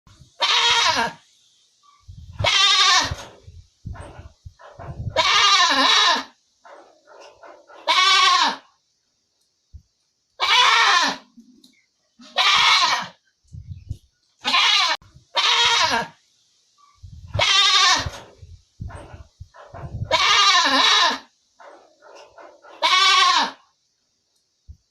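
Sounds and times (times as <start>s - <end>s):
goat bleating: 0.4s - 1.2s, 2.4s - 3.3s, 5.1s - 6.3s, 7.8s - 8.7s, 10.4s - 11.4s, 12.2s - 13.2s, 14.4s - 16.2s, 17.4s - 18.3s, 20.1s - 21.3s, 22.8s - 23.6s.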